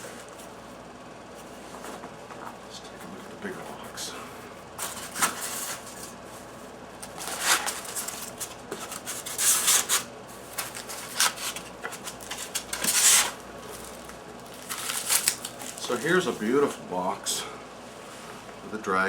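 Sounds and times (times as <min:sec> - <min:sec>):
packaging rustling and scraping: 0:04.8 - 0:16.8.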